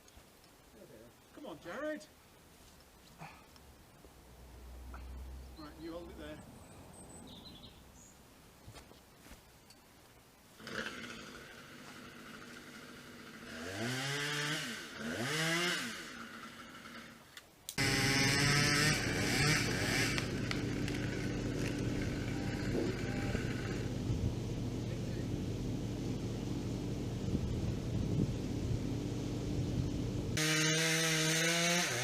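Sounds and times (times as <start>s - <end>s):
chainsaw engine running: 10.6s - 17.2s, 17.8s - 27.1s, 30.3s - 32.0s.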